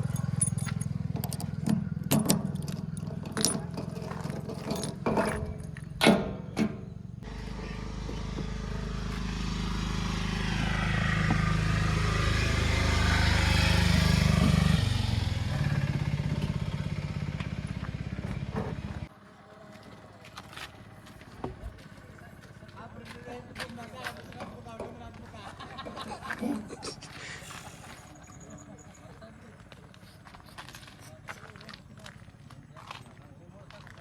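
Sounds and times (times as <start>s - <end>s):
vehicle engine running: 0.0s - 6.0s, 6.6s - 26.4s, 27.0s - 34.0s
sharp clicks and knocks: 0.0s - 6.8s.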